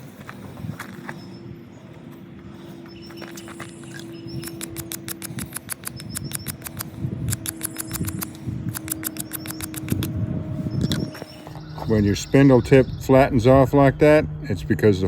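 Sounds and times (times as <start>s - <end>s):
wooden spindle squeaking: 3.2s - 10.1s.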